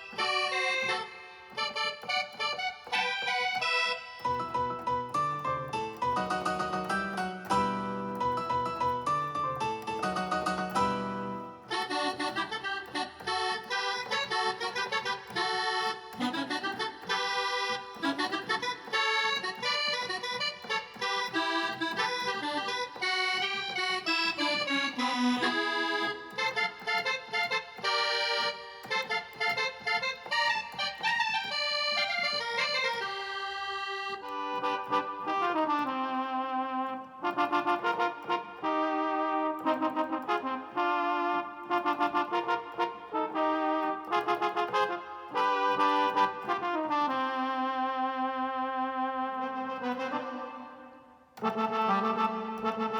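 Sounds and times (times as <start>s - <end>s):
synthesizer accordion melody: 0.0s - 52.9s.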